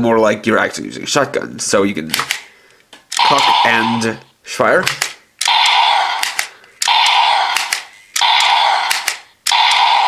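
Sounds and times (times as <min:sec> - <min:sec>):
toy shotgun blast sound effect: 0:03.2 - 0:04.2, 0:04.9 - 0:10.0.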